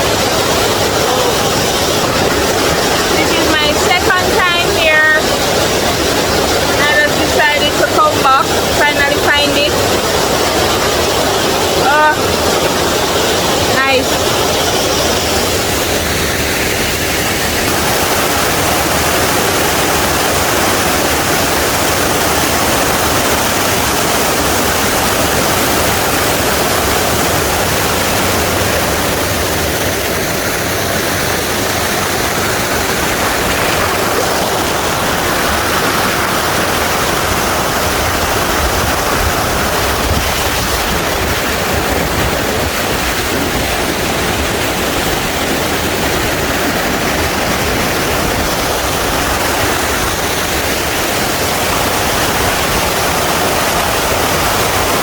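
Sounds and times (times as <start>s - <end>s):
waterfall rushing: 0.0s - 55.0s.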